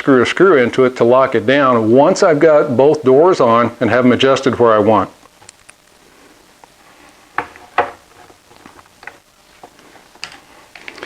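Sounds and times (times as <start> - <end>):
tools knocking on workbench: 7.4 - 8.0.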